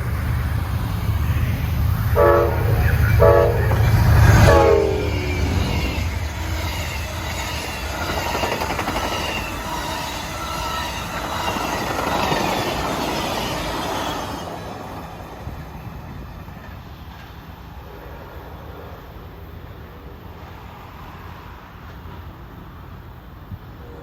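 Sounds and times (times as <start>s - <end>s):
train wheels on rails: 0.0s - 24.0s
high wheel squeals: 1.2s - 14.7s.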